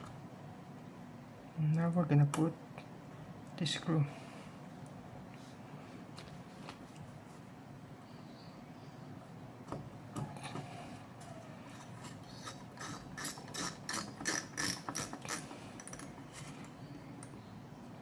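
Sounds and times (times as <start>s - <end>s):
screwdriver driving screw: 12.3s - 16.1s.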